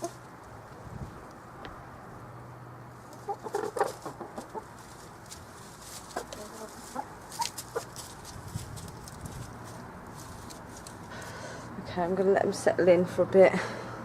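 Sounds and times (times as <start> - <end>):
hens clucking: 0.0 - 0.3, 3.0 - 11.4.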